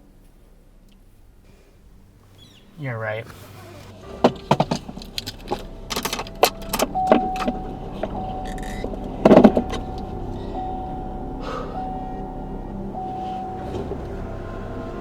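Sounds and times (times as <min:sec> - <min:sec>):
steady hum: 0:00.0 - 0:15.0
clatter: 0:03.4 - 0:10.1
handling clicks and rattles: 0:03.5 - 0:10.0
keys jangling: 0:04.4 - 0:10.0.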